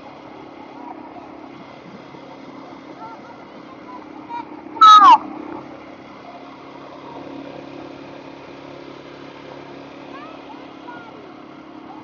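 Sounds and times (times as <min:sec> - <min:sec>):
vehicle engine drone: 0:00.0 - 0:12.0
road noise: 0:00.4 - 0:12.0
high cry falling in pitch: 0:04.8 - 0:05.2.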